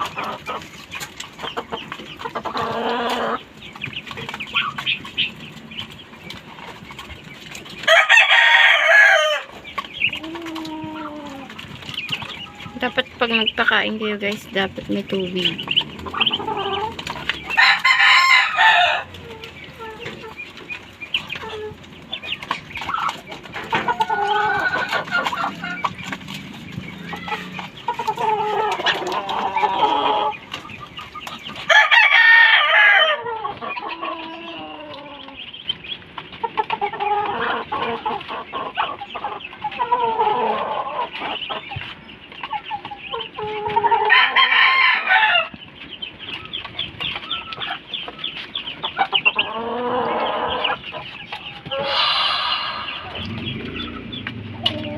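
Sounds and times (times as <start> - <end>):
chickens clucking: 0.0 - 54.9
rooster crowing: 7.9 - 9.5, 17.5 - 19.1, 31.7 - 33.3, 44.1 - 45.6, 51.8 - 53.2.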